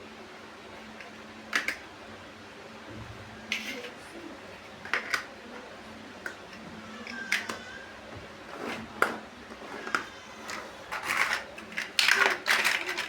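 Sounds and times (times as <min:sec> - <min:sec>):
faint steady hum: 0:00.0 - 0:13.0
plastic bricks clicking: 0:10.9 - 0:13.0.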